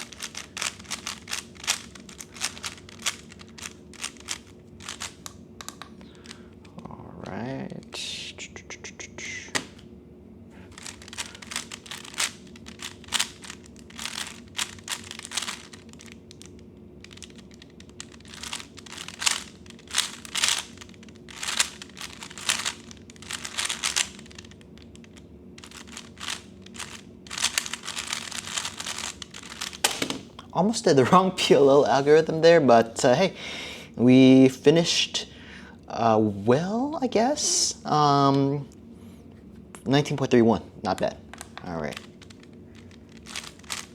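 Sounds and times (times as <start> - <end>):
puzzle cube clicking turns: 0.0 - 6.4, 10.7 - 30.4, 41.0 - 43.9.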